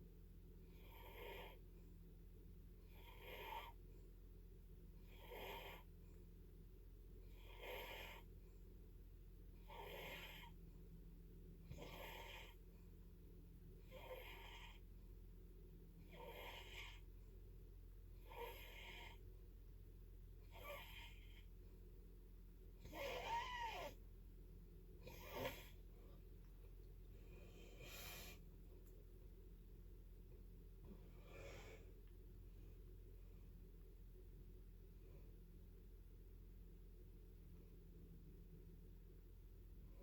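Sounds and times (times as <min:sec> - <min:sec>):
low steady hum: 0:00.0 - 0:40.0
faint snoring: 0:00.6 - 0:01.7, 0:02.8 - 0:03.8, 0:05.0 - 0:06.0, 0:07.2 - 0:08.4, 0:09.6 - 0:10.6, 0:11.6 - 0:12.7, 0:13.8 - 0:14.9, 0:16.0 - 0:17.1, 0:18.2 - 0:19.2, 0:20.4 - 0:21.5, 0:22.8 - 0:24.0, 0:25.0 - 0:25.9, 0:27.2 - 0:28.4.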